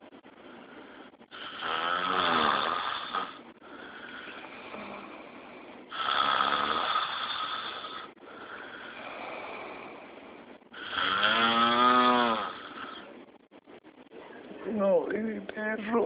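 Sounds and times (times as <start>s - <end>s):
quiet breathing: 0.0s - 2.0s, 2.7s - 11.2s, 12.4s - 14.1s
man snoring: 0.7s - 10.1s, 10.7s - 13.1s.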